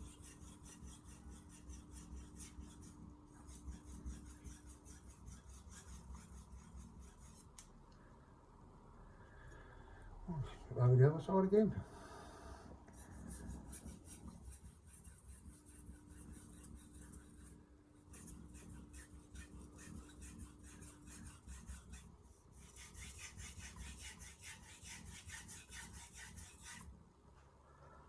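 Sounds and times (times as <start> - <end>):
knife scraping on whetstone: 13.3 - 26.9.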